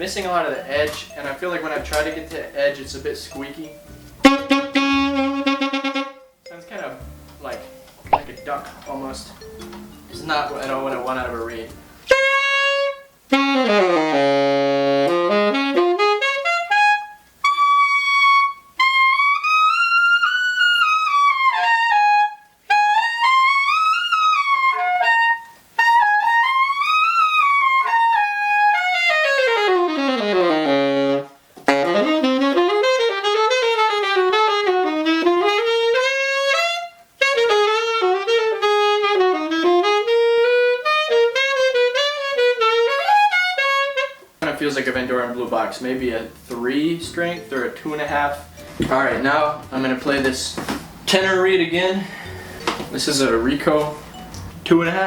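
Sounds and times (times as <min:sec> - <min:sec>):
alto saxophone quick runs: 0:12.1 - 0:44.2.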